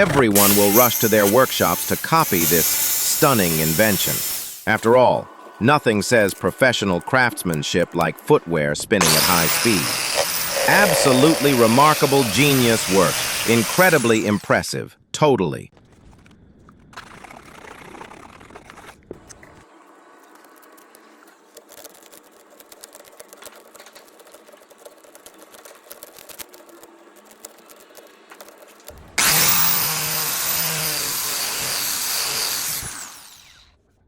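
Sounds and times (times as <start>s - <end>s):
angle grinder whining: 0.0s - 4.9s, 9.0s - 14.5s, 28.9s - 33.8s.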